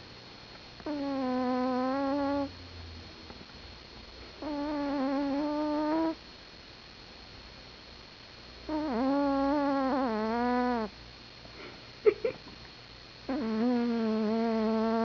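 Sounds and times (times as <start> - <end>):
cat snoring: 0.8 - 2.6, 4.4 - 6.2, 8.7 - 10.9, 13.3 - 15.0.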